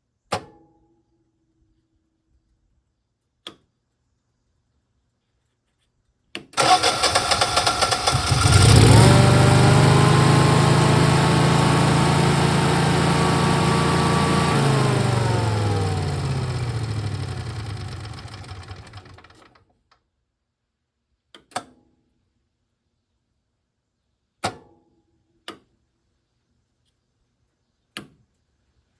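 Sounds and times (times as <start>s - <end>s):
engine cranking and running: 6.6s - 19.6s.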